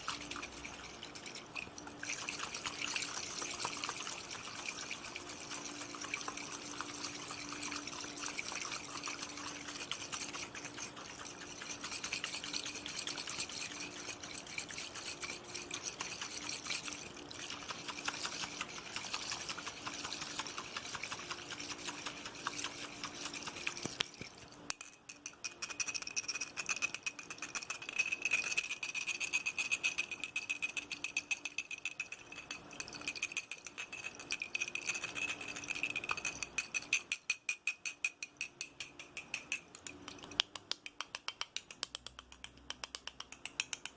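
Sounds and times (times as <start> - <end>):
fast tapping on ringing object: 0.0 - 23.8, 24.7 - 43.9
water trickling and splashing: 0.0 - 24.7.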